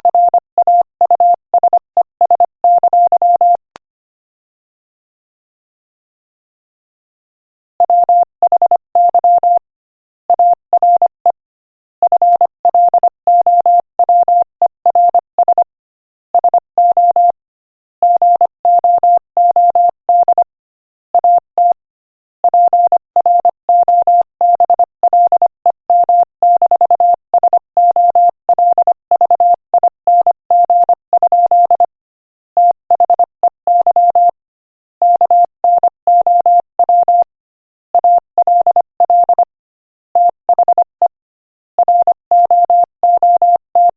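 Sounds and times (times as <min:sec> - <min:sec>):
morse code beeps: 0:00.1 - 0:03.6, 0:07.9 - 0:09.6, 0:12.0 - 0:15.6, 0:16.4 - 0:17.4, 0:18.0 - 0:20.5, 0:21.2 - 0:21.8, 0:22.5 - 0:32.0, 0:32.6 - 0:34.4, 0:35.0 - 0:37.3, 0:38.0 - 0:39.6, 0:40.2 - 0:41.2, 0:41.8 - 0:43.9.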